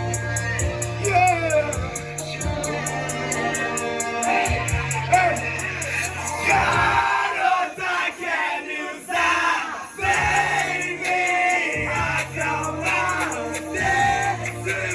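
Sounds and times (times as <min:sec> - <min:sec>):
backing track with bass: 0:00.0 - 0:07.0, 0:10.0 - 0:14.9
crowd singing along: 0:00.0 - 0:14.9.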